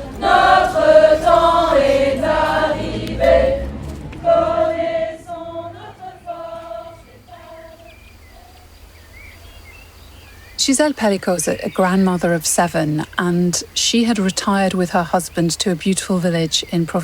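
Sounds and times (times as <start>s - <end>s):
women's choir singing: 0.0s - 8.2s.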